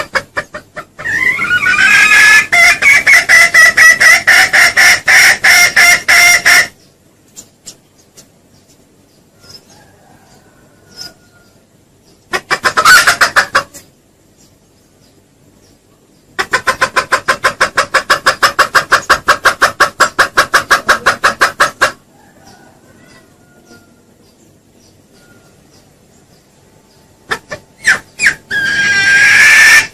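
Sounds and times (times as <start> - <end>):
junglefowl clucking: 0.0 - 6.8, 12.2 - 14.0, 16.3 - 24.2, 27.2 - 29.9.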